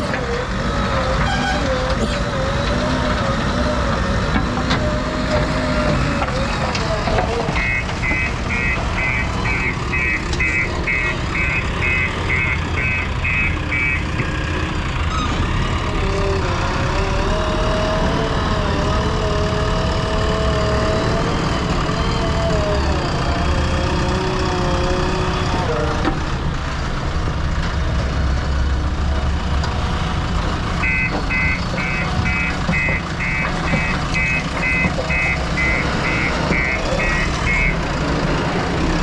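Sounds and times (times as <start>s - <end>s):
backhoe diesel engine running: 0.0s - 39.0s
reversing alarm beeping: 7.6s - 14.2s, 30.8s - 37.8s.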